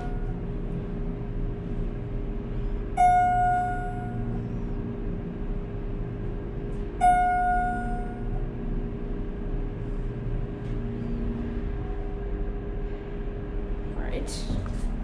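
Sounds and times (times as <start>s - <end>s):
elevator hum: 0.0s - 15.0s
elevator chime ding: 2.9s - 4.4s, 7.0s - 8.4s.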